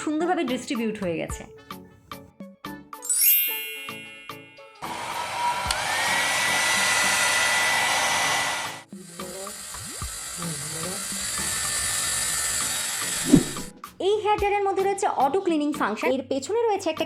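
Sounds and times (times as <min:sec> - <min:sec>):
hair dryer air rush and whine: 0:04.8 - 0:13.7.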